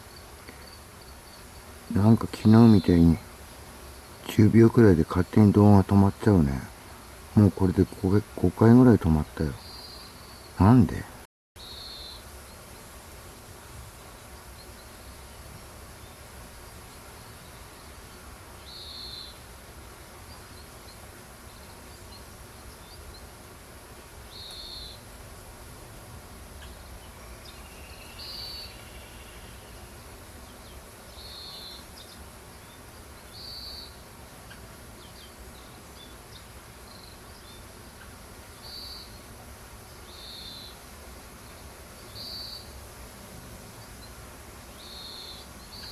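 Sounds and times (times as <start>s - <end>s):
buzzy insect call: 0.0s - 11.0s, 26.5s - 43.1s, 43.7s - 45.9s
low background hiss: 0.0s - 45.9s.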